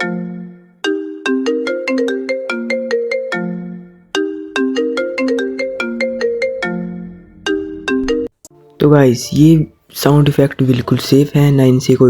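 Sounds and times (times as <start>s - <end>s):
ringtone melody: 0.0s - 9.6s.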